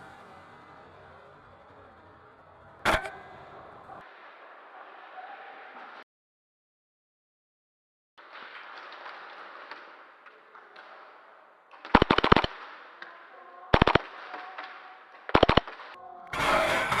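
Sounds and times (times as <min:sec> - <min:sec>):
airsoft gun bursts: 0:11.9 - 0:12.7.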